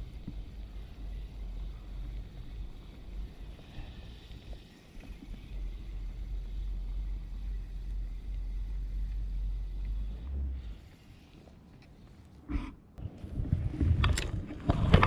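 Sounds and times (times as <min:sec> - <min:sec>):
wind buffeting microphone: 0:13.0 - 0:15.0.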